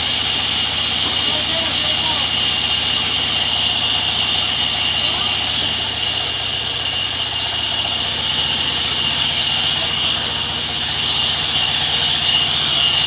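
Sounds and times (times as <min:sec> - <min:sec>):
high-pitched machine whine: 0:00.0 - 0:13.0
sawmill machinery drone: 0:00.0 - 0:13.0.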